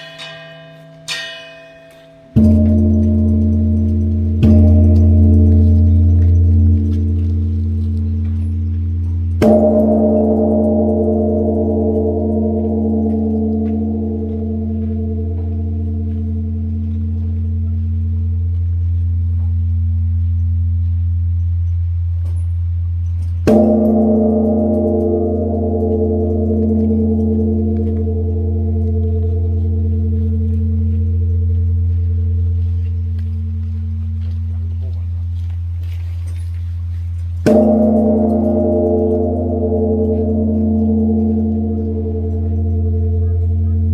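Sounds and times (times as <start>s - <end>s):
large temple bell ringing: 0.0s - 43.9s.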